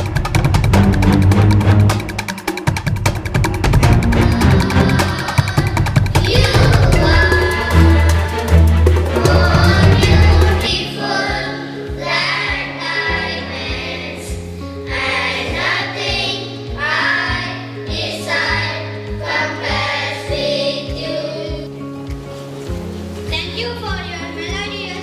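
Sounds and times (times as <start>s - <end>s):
heavy bass thumps: 0.0s - 10.7s
music with voices singing: 0.2s - 25.0s.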